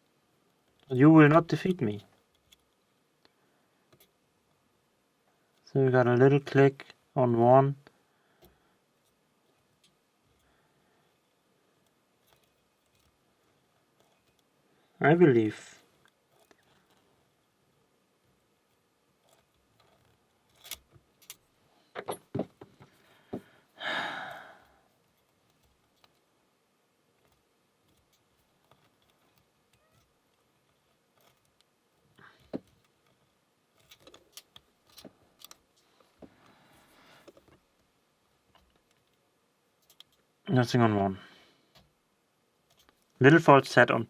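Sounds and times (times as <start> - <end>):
lock pick metallic clicks and scrapes: 19.2 - 21.4.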